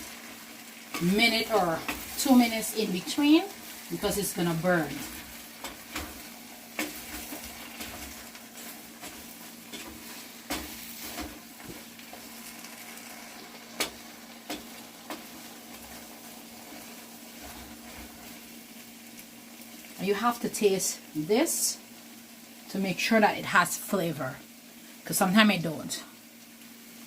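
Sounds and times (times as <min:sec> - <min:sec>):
okra sizzling in oil: 0:00.0 - 0:27.0
utensil scraping and knocking pan: 0:06.8 - 0:11.8.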